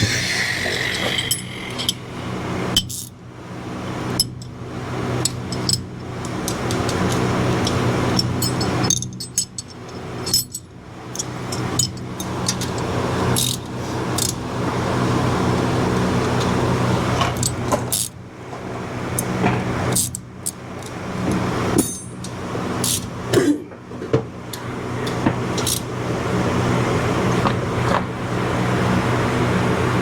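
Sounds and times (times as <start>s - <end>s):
steady mechanical hum: 0.0s - 30.0s
hand tools clinking on metal: 5.2s - 14.4s, 21.8s - 23.0s, 24.5s - 25.9s.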